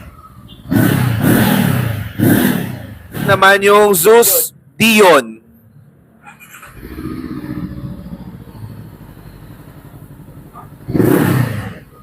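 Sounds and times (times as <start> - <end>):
motorcycle engine idling: 6.7 - 12.0.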